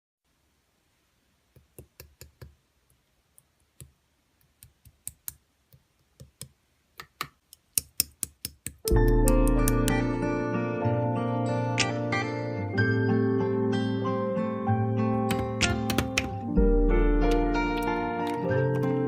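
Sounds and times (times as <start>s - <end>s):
keyboard clicking: 6.2s - 10.1s, 15.3s - 16.5s.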